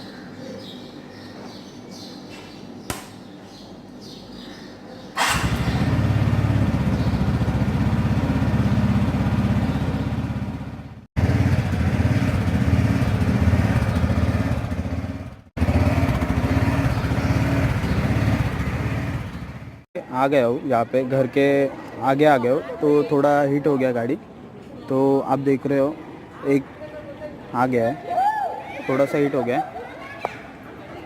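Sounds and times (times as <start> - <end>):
scooter engine running: 5.2 - 19.9.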